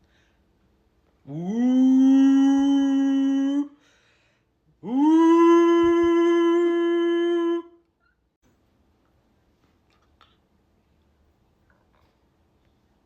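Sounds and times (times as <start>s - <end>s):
person singing a held note: 1.3s - 3.8s, 4.8s - 7.8s.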